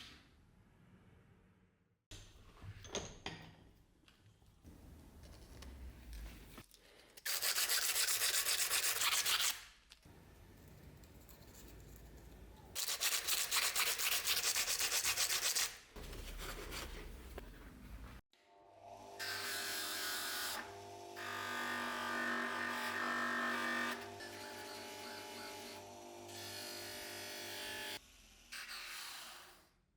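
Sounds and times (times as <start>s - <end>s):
sanding strokes: 7.3s - 9.6s, 12.8s - 15.8s.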